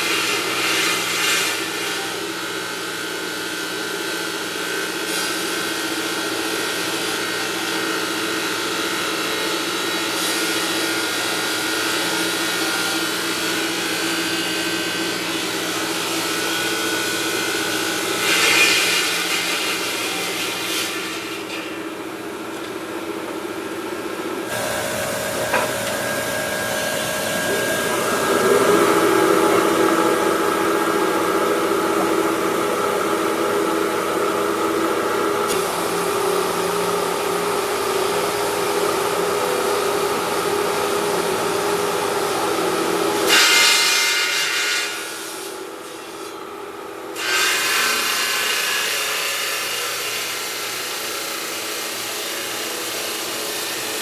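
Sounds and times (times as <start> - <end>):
steady machine whine: 0.0 - 43.2
stone grinding machinery: 13.7 - 37.7.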